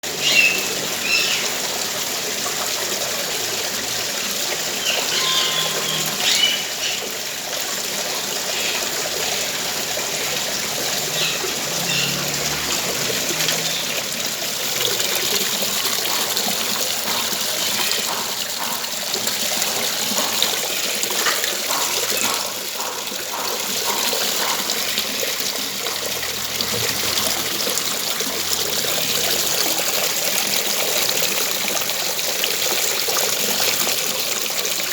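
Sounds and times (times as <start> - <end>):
waterfall splashing and trickling: 0.0 - 34.9
bird chirps: 4.9 - 7.0.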